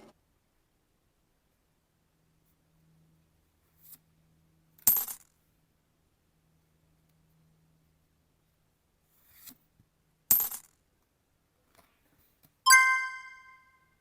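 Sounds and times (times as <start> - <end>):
bright ringing chime: 12.7 - 13.8.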